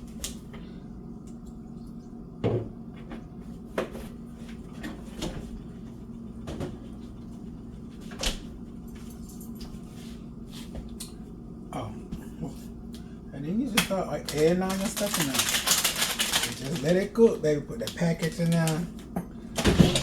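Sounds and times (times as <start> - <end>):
steady low hum: 0.0 - 20.0
kitchen knocks and clunks: 2.4 - 4.1, 6.4 - 6.8, 19.2 - 20.0.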